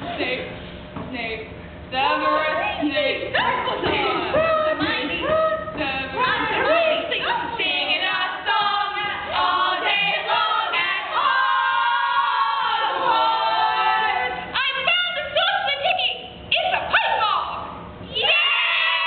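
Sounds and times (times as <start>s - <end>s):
voices singing a cappella: 3.4s - 14.5s.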